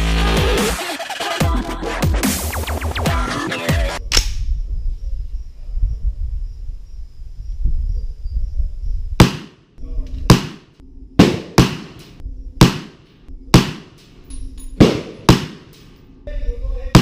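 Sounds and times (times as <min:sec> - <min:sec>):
rifle gunshots: 0:09.2 - 0:09.6, 0:10.3 - 0:10.6, 0:11.2 - 0:12.0, 0:12.6 - 0:14.0, 0:14.8 - 0:15.8.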